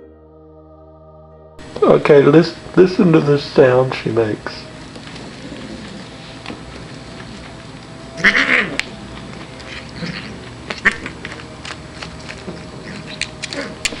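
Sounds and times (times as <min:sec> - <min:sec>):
cat calling: 0:05.3 - 0:11.2, 0:12.8 - 0:14.0.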